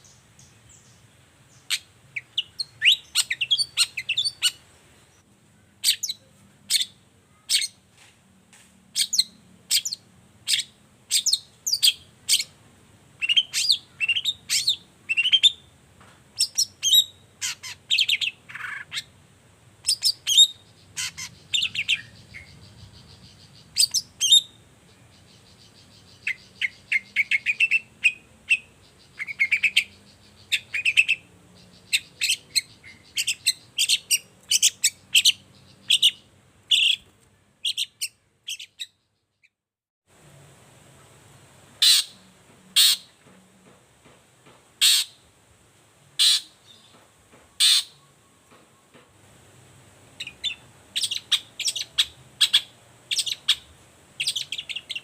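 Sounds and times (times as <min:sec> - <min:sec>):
bird chattering calls: 0:19.8 - 0:24.4, 0:41.8 - 0:42.2, 0:42.8 - 0:43.1, 0:44.8 - 0:45.2, 0:46.2 - 0:46.6, 0:47.6 - 0:48.0, 0:50.2 - 0:55.0.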